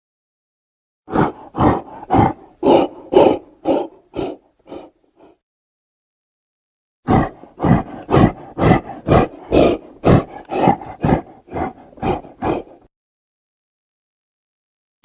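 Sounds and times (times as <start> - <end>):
ape roaring call: 1.1 - 5.3, 7.1 - 12.9.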